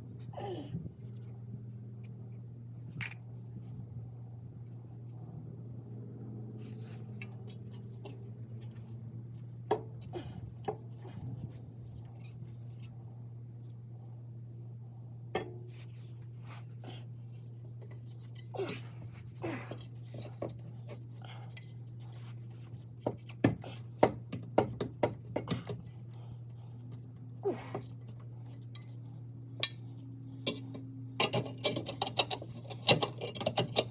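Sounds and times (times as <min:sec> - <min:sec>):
steady low hum: 0:00.0 - 0:33.9
metal pipes knocking and clinking: 0:30.4 - 0:33.9.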